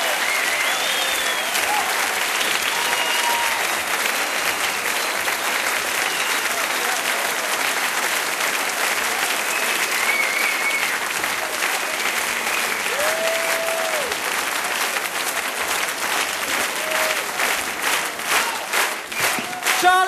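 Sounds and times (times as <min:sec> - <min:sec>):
audience applauding: 0:00.0 - 0:20.0
whistles: 0:00.1 - 0:01.6, 0:06.0 - 0:06.5, 0:09.5 - 0:11.0.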